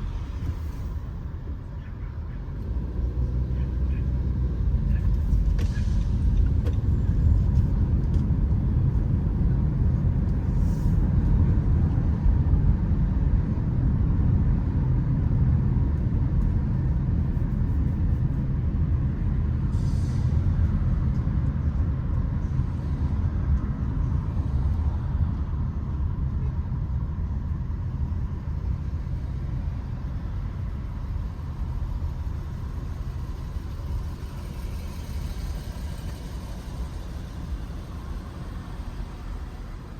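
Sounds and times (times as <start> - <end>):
road traffic rumble: 0.0 - 39.9.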